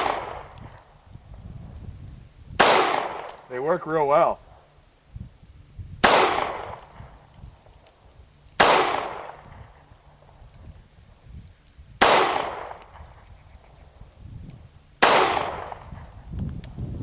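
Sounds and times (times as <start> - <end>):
pistol shots echoing: 0.0 - 0.6, 2.6 - 3.7, 6.0 - 7.0, 8.6 - 9.7, 12.0 - 13.0, 15.0 - 16.1.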